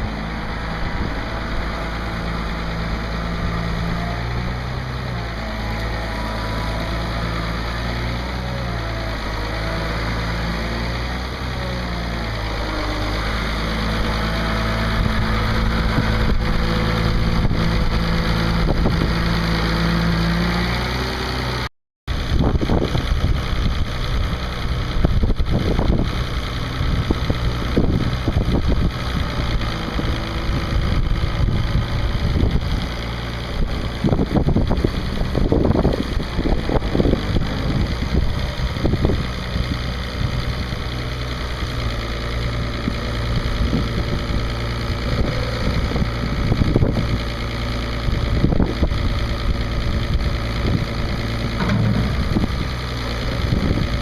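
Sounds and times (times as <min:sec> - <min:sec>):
diesel engine running: 0:00.0 - 0:54.0
metal knocks and clanks: 0:51.5 - 0:53.1.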